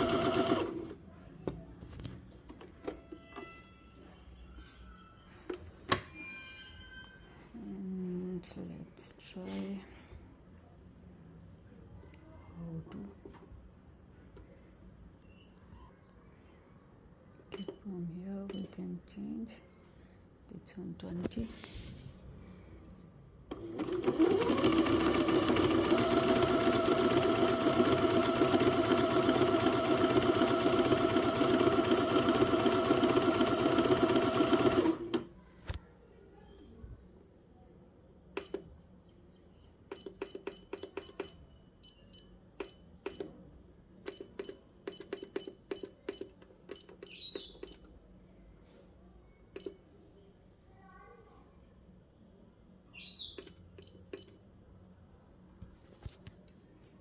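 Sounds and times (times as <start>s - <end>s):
sewing machine running: 0.0s - 1.0s, 23.5s - 35.3s.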